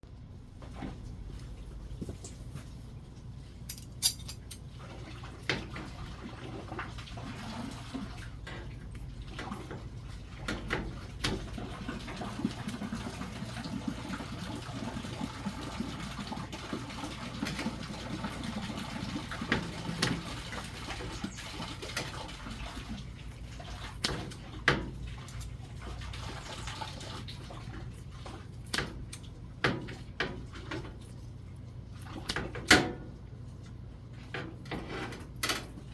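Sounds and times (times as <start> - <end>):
water running: 4.6 - 32.4.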